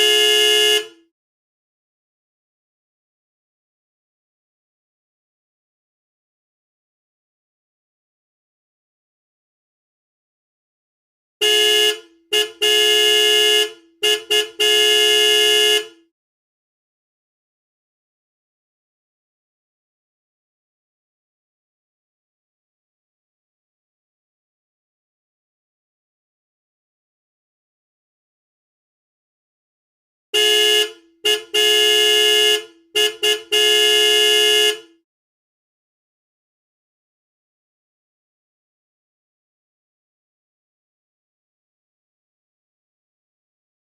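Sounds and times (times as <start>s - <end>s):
car horn honking: 0.0s - 1.0s, 11.4s - 16.1s, 30.4s - 35.0s.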